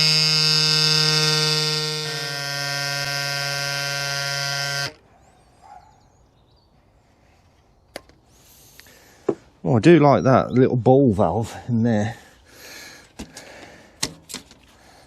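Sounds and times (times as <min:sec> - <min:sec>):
electric pump motor buzzing: 0:00.0 - 0:05.0.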